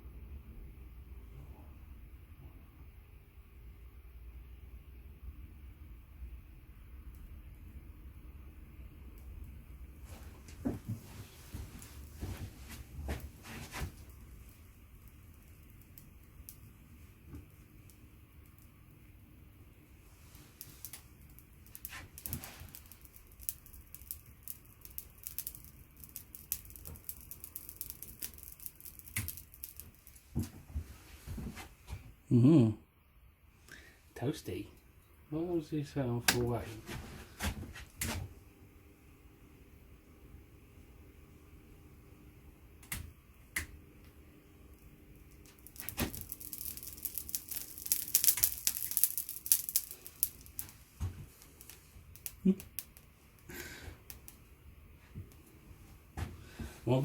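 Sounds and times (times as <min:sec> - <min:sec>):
faint steady hum: 0:00.0 - 0:57.0
fan heater ticking and crackling: 0:09.1 - 0:30.6, 0:42.8 - 0:54.6.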